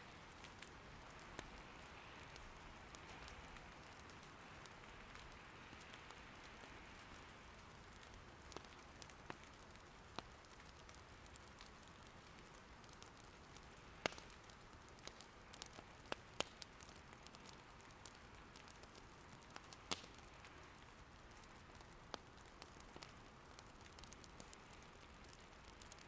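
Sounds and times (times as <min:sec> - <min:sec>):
gentle rain pattering: 0:00.0 - 0:26.0
wood fire popping and crackling: 0:00.0 - 0:26.0.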